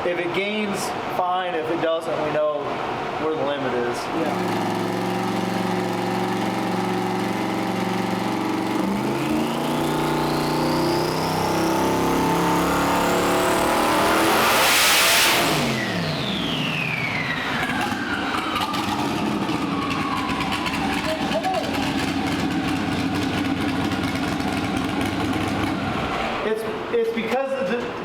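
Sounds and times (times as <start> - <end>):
rush of vented air: 0.0 - 7.3
engine revving: 4.1 - 26.4
turbo whistle: 9.2 - 12.4.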